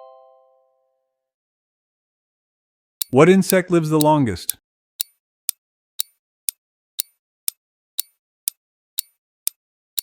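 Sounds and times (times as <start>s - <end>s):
countdown timer ticking: 3.0s - 9.2s.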